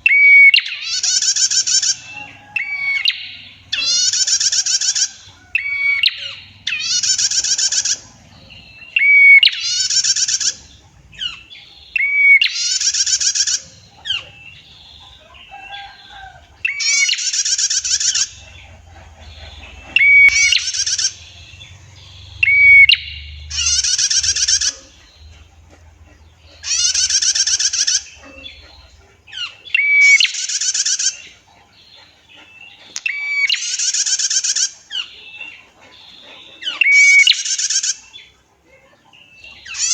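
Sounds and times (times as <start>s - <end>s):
bird buzzy trills: 0.0s - 31.5s.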